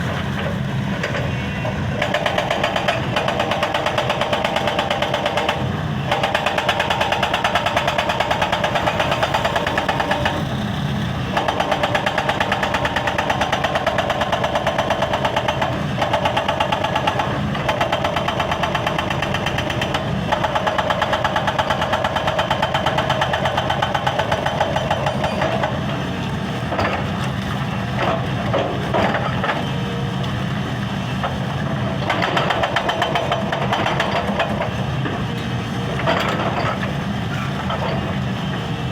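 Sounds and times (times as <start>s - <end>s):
hydraulic rock breaker hammering: 0.0s - 29.8s, 31.2s - 38.2s
diesel engine running: 0.0s - 38.9s
scattered knocks: 1.9s - 10.4s.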